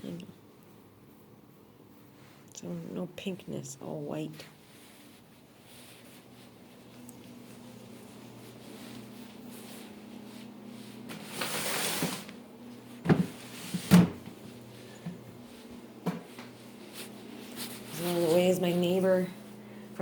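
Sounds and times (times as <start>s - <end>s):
door scraping: 11.1s - 12.3s.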